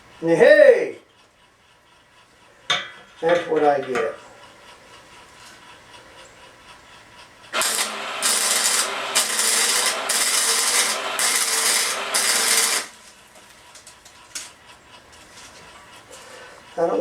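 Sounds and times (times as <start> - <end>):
welding arc crackling and hissing: 7.5 - 14.6.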